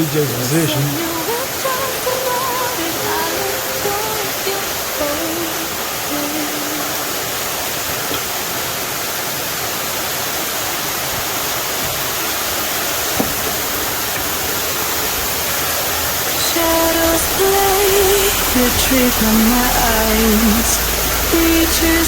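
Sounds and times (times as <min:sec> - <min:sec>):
waterfall rushing: 0:00.0 - 0:22.0.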